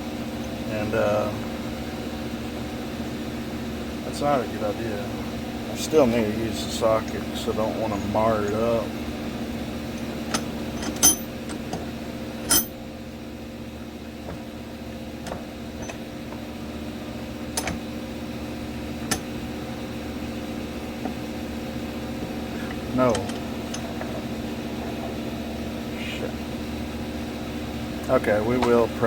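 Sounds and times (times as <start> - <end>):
steady hum: 0.0 - 29.0
metal clicks and clanks: 10.3 - 11.8.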